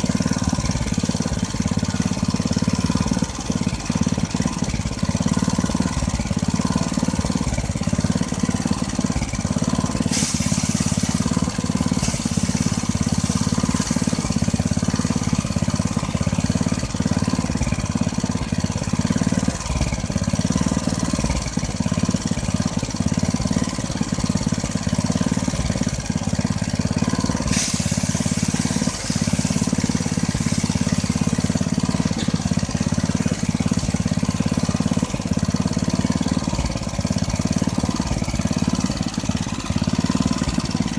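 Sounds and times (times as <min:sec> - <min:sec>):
threshing machine humming: 0:00.0 - 0:40.9
rushing hiss: 0:09.5 - 0:16.6, 0:27.3 - 0:35.2.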